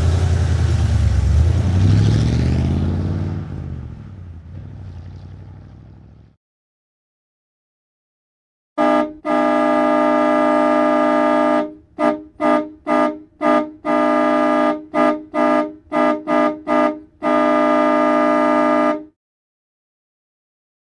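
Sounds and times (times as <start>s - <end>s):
truck horn blasts and toots: 8.8s - 19.2s.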